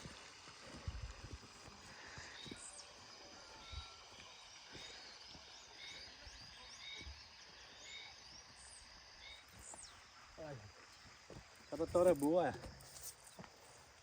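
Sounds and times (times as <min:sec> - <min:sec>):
bird chirping: 0:02.2 - 0:12.2.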